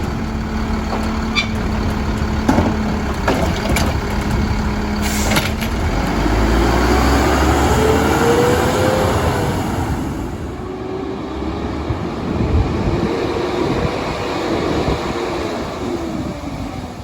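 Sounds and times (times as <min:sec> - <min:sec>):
garbage truck engine revving: 0:00.0 - 0:16.3.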